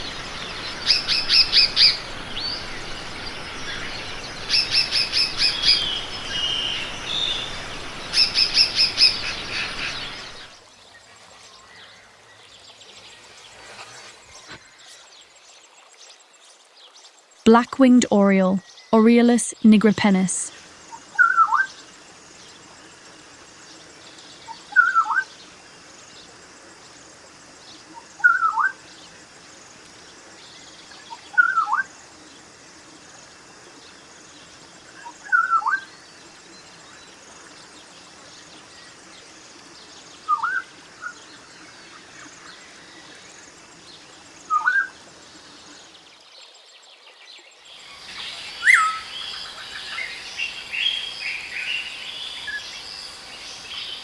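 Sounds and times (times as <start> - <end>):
insects buzzing: 0.0 - 10.6, 47.7 - 54.0
bird calling: 48.0 - 54.0.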